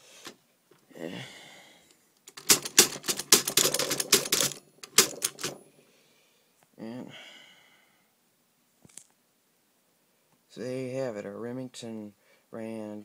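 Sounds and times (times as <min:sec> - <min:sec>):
manual typewriter key strikes: 0:02.3 - 0:05.6.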